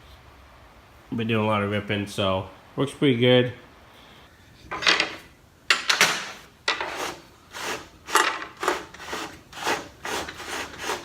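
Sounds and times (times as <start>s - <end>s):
wood and tools scraping: 6.3s - 11.0s.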